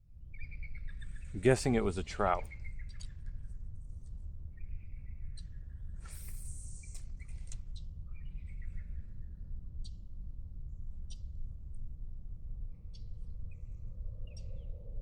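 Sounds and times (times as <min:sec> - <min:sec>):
steady low rumble: 0:01.2 - 0:02.8
brief hiss: 0:06.0 - 0:07.1.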